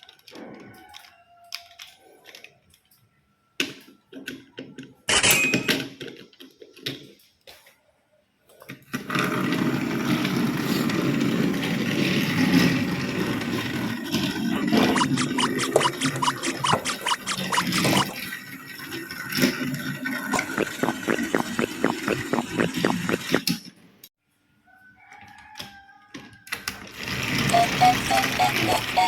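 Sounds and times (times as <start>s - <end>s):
toy motor whirring: 14.8s - 18.2s.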